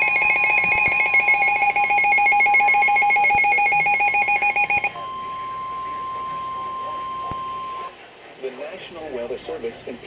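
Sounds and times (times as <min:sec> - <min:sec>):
harsh two-tone alarm: 0:00.0 - 0:07.9.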